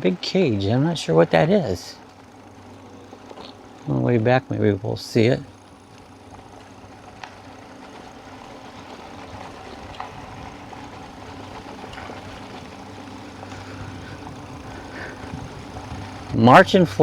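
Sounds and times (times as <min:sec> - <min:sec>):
electric bike motor hum: 0:00.0 - 0:17.0
tyre and road noise: 0:00.0 - 0:17.0
faint ticks: 0:11.6 - 0:16.1.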